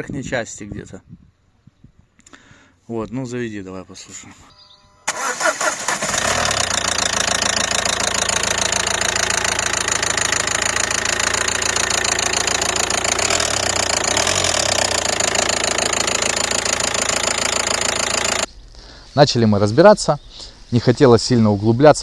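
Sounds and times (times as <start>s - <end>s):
diesel engine idling: 5.1s - 18.5s
rapid engine knock: 6.3s - 18.5s.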